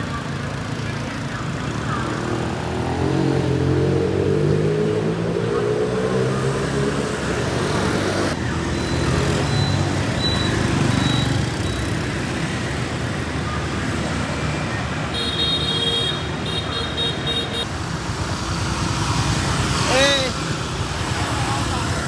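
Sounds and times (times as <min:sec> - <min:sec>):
motorbike engines running: 0:00.0 - 0:22.0
street traffic: 0:00.0 - 0:22.0.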